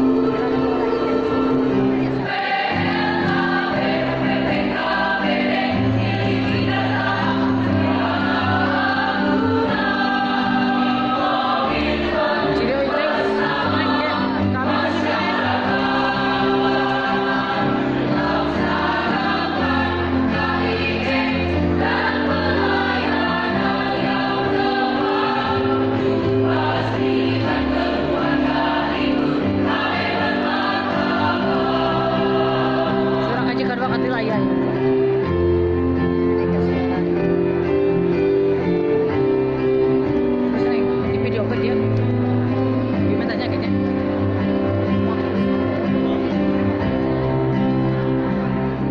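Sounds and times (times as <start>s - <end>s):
choir singing: 0.0s - 41.0s, 44.5s - 48.9s.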